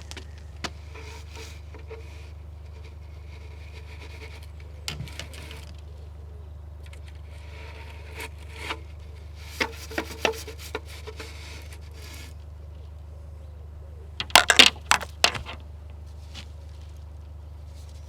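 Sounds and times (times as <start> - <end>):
brush scraping inside chimney flue: 0.0 - 12.9
steady low hum: 0.0 - 18.0.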